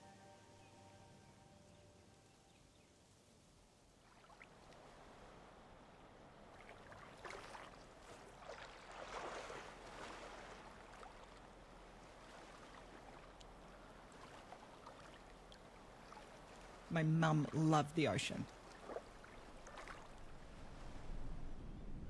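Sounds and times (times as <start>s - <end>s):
water lapping around a boat: 2.7s - 21.3s
light ticks: 13.4s - 13.6s.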